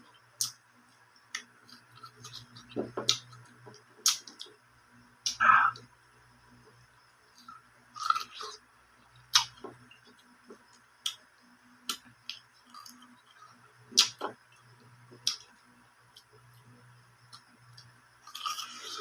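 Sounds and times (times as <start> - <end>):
person chewing crunchy food: 1.7 - 4.5, 7.4 - 8.6, 18.3 - 19.0
mouth clicks: 5.2 - 5.8.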